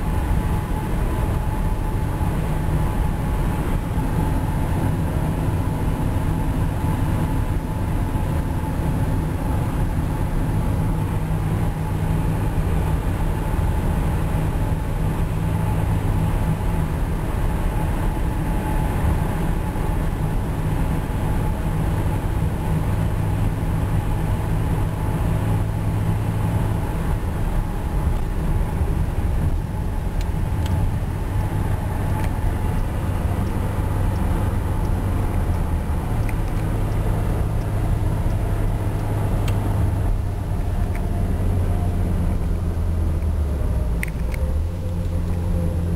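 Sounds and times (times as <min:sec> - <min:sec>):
low exhaust drone: 0:00.0 - 0:45.9
tires humming on pavement: 0:00.0 - 0:45.9.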